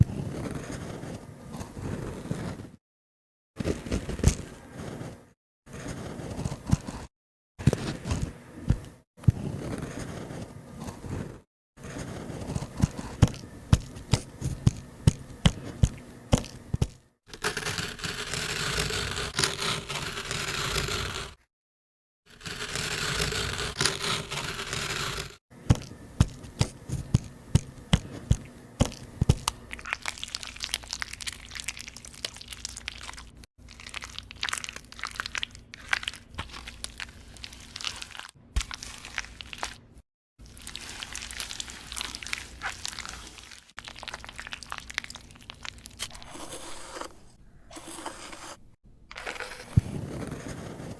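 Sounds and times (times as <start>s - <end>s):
makeup cracking and crunching: 28.9s - 46.1s
crumbling and scraping: 40.6s - 50.9s.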